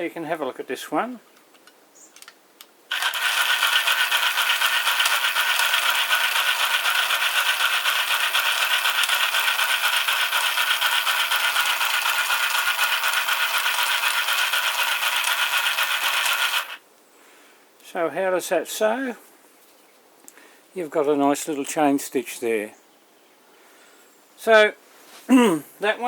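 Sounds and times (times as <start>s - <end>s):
sewing machine rattling: 2.9s - 16.8s.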